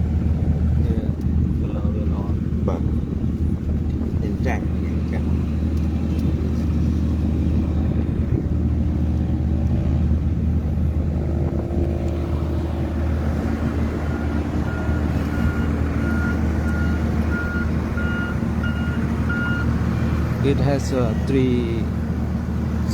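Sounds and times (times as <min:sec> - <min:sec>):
heavy diesel engine drone: 0:00.0 - 0:22.9
reversing alarm beeping: 0:14.0 - 0:19.7.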